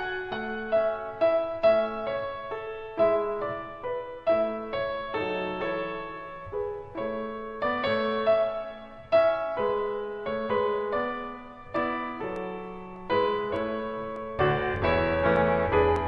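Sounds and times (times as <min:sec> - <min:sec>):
piano bass notes: 0:00.0 - 0:16.0
piano chords: 0:00.0 - 0:16.0.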